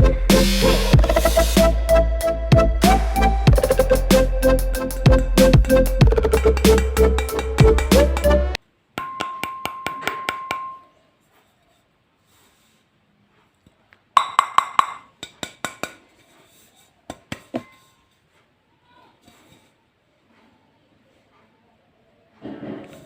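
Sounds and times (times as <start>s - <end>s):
music: 0.0s - 8.6s.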